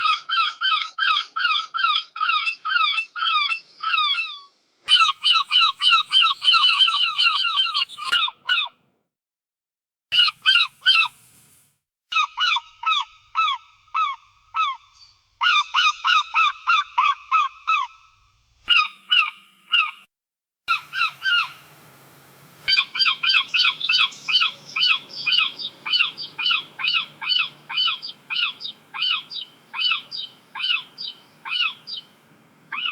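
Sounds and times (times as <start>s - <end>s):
seagulls calling: 4.9s - 8.3s, 10.2s - 11.5s, 20.7s - 32.9s.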